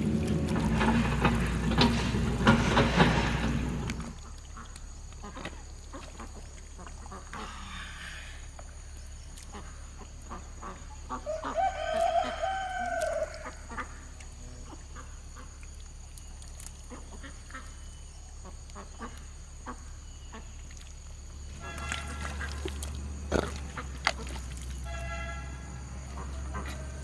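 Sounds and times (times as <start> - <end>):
rooster crowing: 11.2 - 13.7, 26.2 - 27.0.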